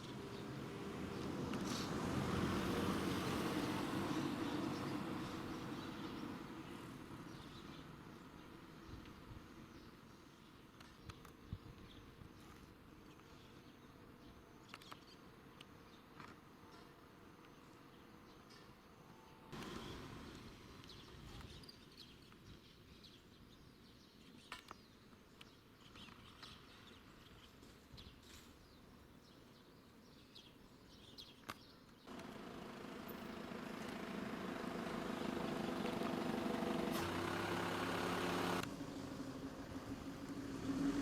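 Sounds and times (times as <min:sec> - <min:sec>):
vehicle engine approaching: 0:00.1 - 0:06.6, 0:32.1 - 0:41.0
faint chirps and clicks: 0:14.6 - 0:17.8, 0:24.2 - 0:28.4.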